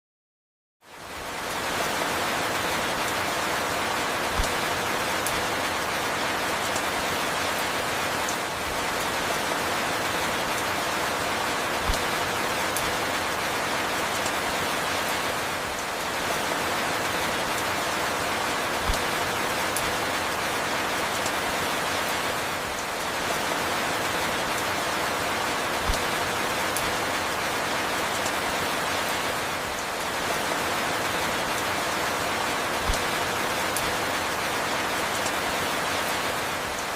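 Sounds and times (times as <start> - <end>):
dense rainfall: 0.8 - 36.9.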